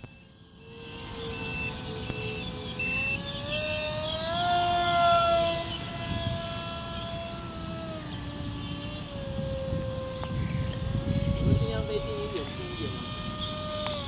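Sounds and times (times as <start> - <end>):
high-pitched beeping: 0.0 - 4.0
model plane motor whining: 0.0 - 14.0.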